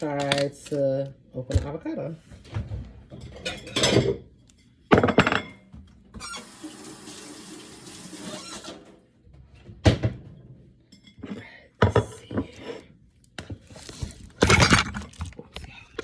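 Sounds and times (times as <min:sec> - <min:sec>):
kitchen tap running: 0:06.2 - 0:08.9.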